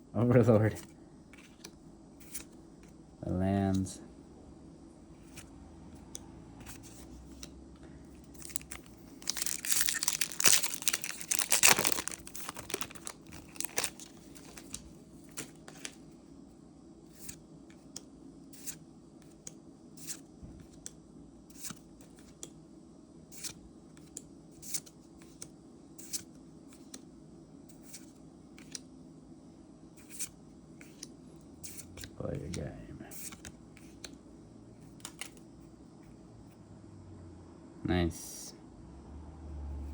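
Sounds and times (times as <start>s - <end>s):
foil wrapper tearing and crinkling: 8.4s - 14.8s
cards flicking with crisp snaps: 34.9s - 35.4s.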